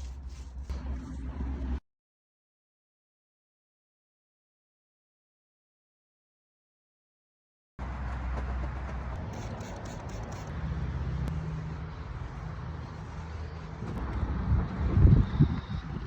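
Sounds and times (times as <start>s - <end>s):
engine humming: 7.8s - 16.0s.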